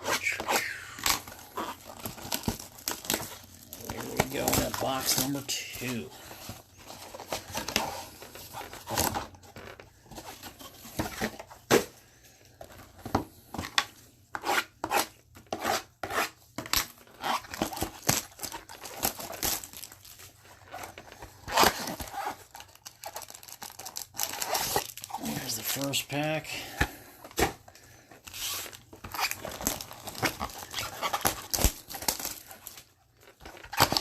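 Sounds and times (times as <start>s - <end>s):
plastic shrink wrap tearing: 0.0s - 9.8s, 16.8s - 26.7s, 28.2s - 34.0s
plastic wrap crumpling: 0.0s - 11.4s, 16.8s - 34.0s.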